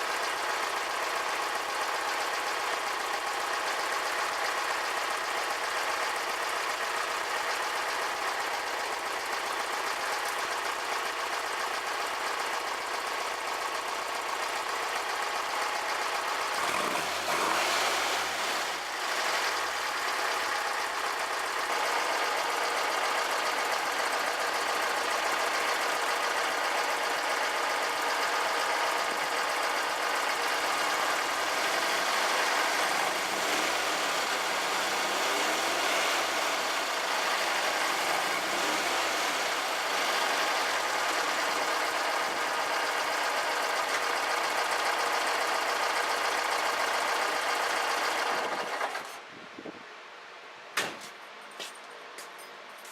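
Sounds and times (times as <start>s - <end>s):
car engine running: 0.0s - 48.9s.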